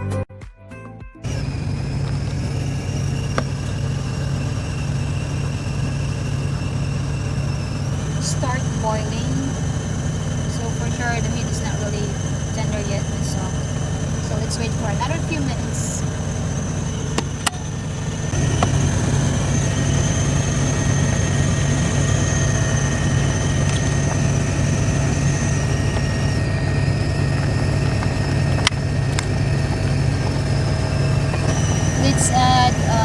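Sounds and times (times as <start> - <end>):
truck engine idling: 1.2 - 33.0.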